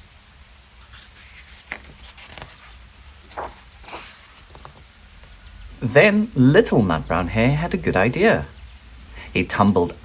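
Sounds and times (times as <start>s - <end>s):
crickets chirring: 0.0s - 10.0s
soft taps or rustles: 1.3s - 5.4s.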